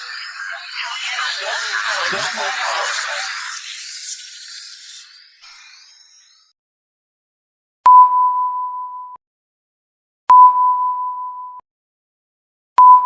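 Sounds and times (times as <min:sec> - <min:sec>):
electronic beep: 0:07.9 - 0:09.2, 0:10.3 - 0:11.6, 0:12.8 - 0:13.0.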